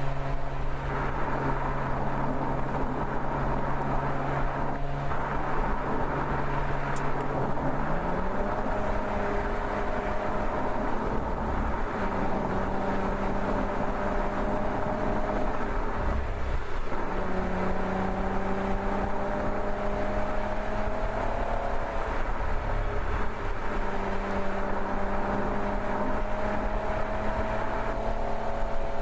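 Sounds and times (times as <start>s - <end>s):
car engine under load: 0.0s - 29.0s
road and tyre noise: 0.0s - 29.0s.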